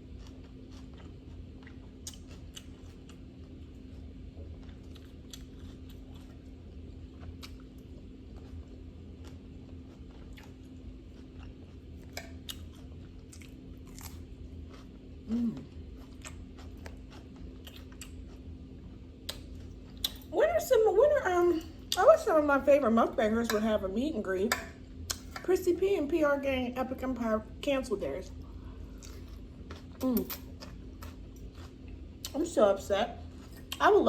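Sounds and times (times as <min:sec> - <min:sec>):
wet chewing and light crunching: 0:00.0 - 0:20.4, 0:24.5 - 0:25.6, 0:28.2 - 0:34.0
steady low hum: 0:00.0 - 0:34.0
person humming briefly: 0:15.3 - 0:15.7.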